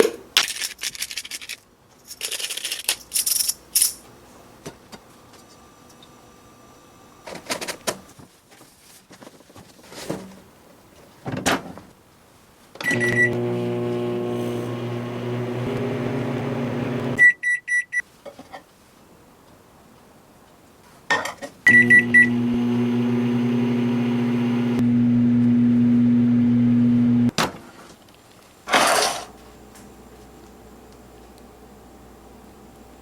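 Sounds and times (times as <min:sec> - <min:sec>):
microwave oven humming: 0:12.8 - 0:17.2, 0:21.7 - 0:27.3
microwave beeps: 0:12.8 - 0:18.0, 0:21.7 - 0:27.3.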